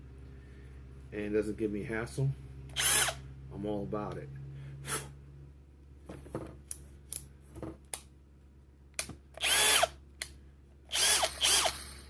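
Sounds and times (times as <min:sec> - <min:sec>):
cordless drill motor whining: 0:02.7 - 0:03.2, 0:09.4 - 0:10.0, 0:10.9 - 0:12.0.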